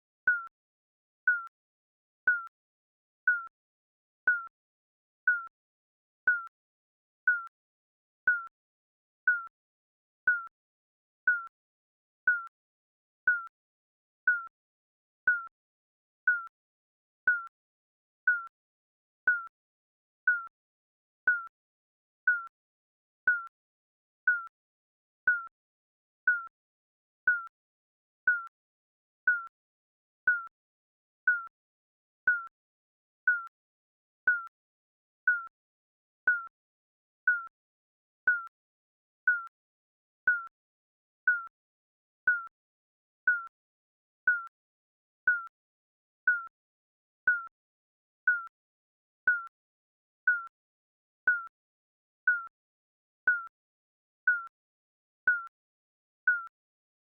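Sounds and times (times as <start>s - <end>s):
timer beeping: 2.3s - 2.5s, 4.3s - 4.5s, 6.3s - 6.5s, 7.3s - 7.5s, 9.3s - 9.5s, 11.3s - 11.5s, 12.3s - 12.5s, 13.3s - 13.5s, 14.3s - 14.5s, 16.3s - 16.5s, 19.3s - 19.5s, 20.3s - 20.5s, 21.3s - 21.5s, 23.3s - 23.5s, 24.3s - 24.5s, 26.3s - 26.5s, 28.3s - 28.5s, 29.3s - 29.5s, 30.3s - 30.5s, 38.3s - 38.5s, 43.3s - 43.5s, 44.3s - 44.5s, 46.3s - 46.5s, 47.3s - 47.5s, 48.3s - 48.5s, 51.3s - 51.5s, 53.3s - 53.5s.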